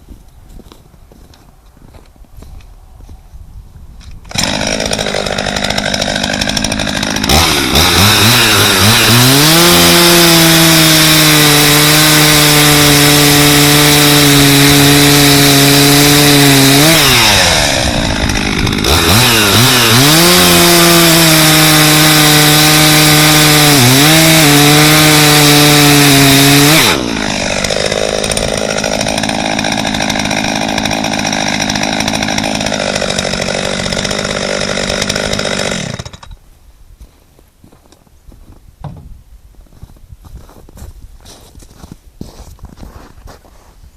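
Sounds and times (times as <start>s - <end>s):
chainsaw engine idling and revving: 4.3s - 36.4s.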